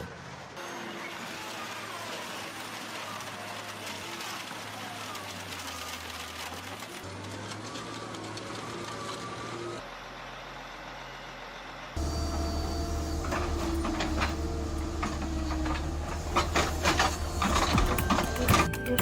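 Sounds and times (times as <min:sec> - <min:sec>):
heavy machinery humming: 0:00.0 - 0:19.0
metal clanks and knocks: 0:13.3 - 0:19.0.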